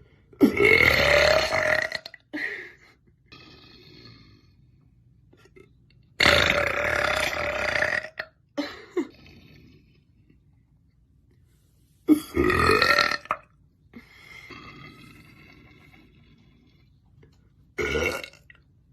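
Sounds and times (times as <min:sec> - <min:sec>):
woman burping: 0:00.4 - 0:02.5, 0:12.1 - 0:13.5, 0:17.8 - 0:18.6.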